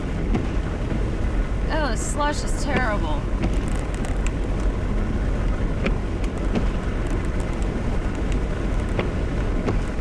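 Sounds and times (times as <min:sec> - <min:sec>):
car engine and tyres in slush: 0:00.0 - 0:10.0.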